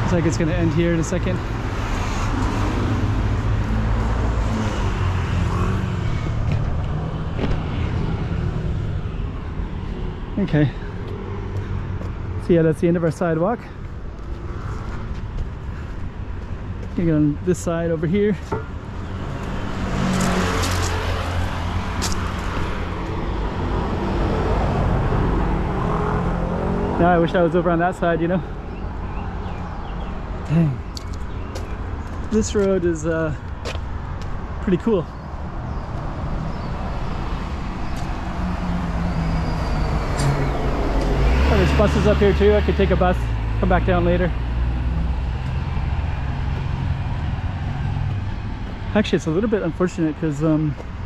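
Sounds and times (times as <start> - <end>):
cars driving past: 0.0 - 51.0
road traffic passing: 0.0 - 51.0.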